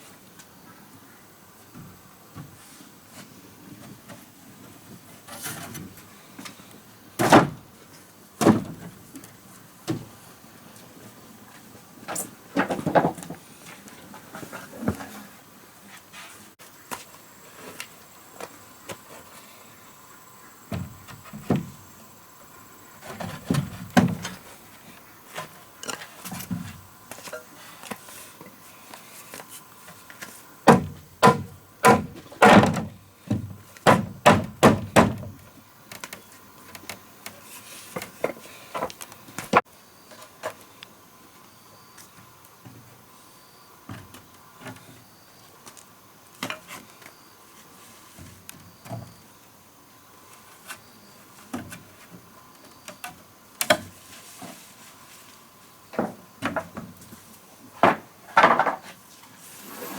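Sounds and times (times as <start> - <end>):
wooden knocks and thuds: 12.6 - 13.4, 20.7 - 21.8, 23.1 - 24.4, 30.7 - 35.4, 57.8 - 58.9.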